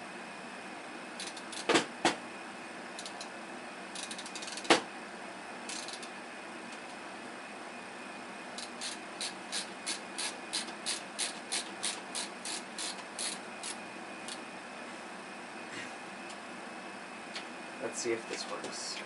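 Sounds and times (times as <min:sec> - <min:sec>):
screwdriver ratchet clicking: 0:03.0 - 0:03.3, 0:04.0 - 0:04.7, 0:05.7 - 0:06.1, 0:08.6 - 0:14.4.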